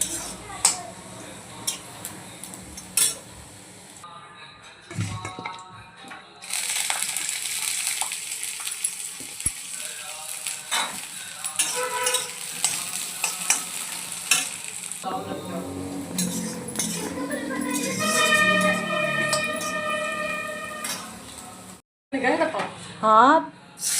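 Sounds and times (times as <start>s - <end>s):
spatula scraping a pan: 0.0s - 0.5s, 11.6s - 14.6s, 16.0s - 21.2s
food sizzling in hot pan: 0.0s - 0.8s, 1.6s - 4.0s, 6.4s - 21.8s.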